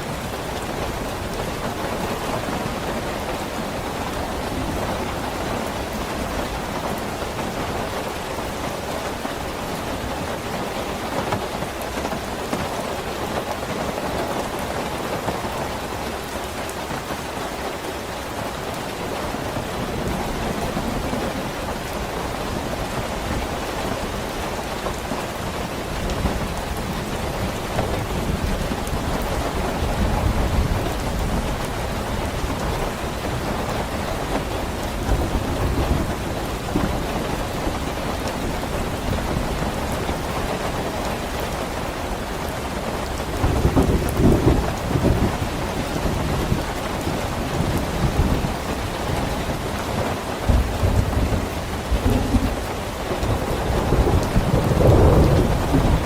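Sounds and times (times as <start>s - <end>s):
heavy rain: 0.0s - 56.0s
low rolling thunder: 25.9s - 49.8s, 50.4s - 56.0s.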